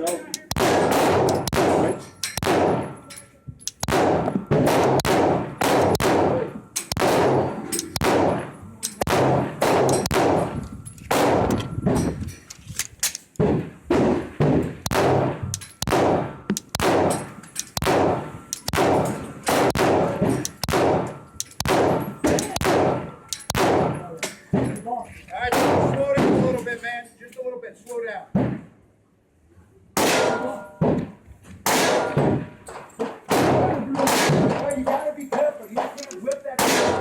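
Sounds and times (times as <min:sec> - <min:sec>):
pistol shots with ringing echo: 0:00.4 - 0:11.6, 0:14.9 - 0:24.1, 0:30.0 - 0:30.7, 0:31.7 - 0:32.5, 0:33.3 - 0:34.6, 0:36.6 - 0:37.0.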